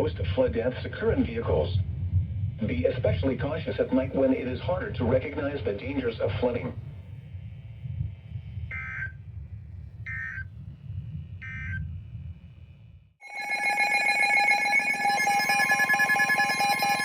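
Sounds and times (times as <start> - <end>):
low hum: 0.0 - 17.0
two-tone attention signal: 8.7 - 9.1, 10.1 - 10.4, 13.2 - 17.0
digital screeching chirps: 8.7 - 9.2, 10.1 - 10.4.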